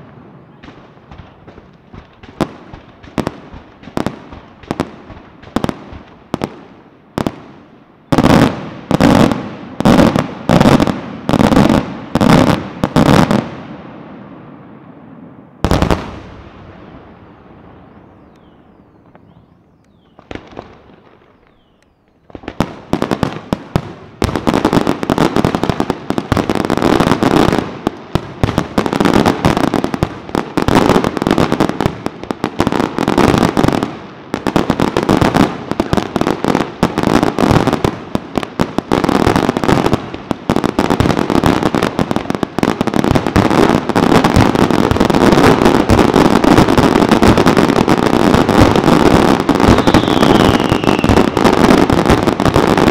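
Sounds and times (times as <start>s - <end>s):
fireworks bangs and crackling: 0.0s - 52.9s
firework whistles: 17.8s - 20.4s, 49.4s - 51.8s.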